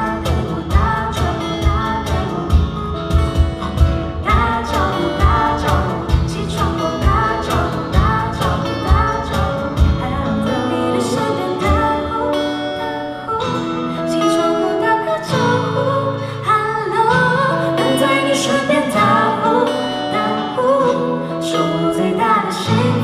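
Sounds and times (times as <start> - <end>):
drum kit: 0.0 - 10.5
guitar: 0.0 - 23.0
person singing: 0.0 - 23.0.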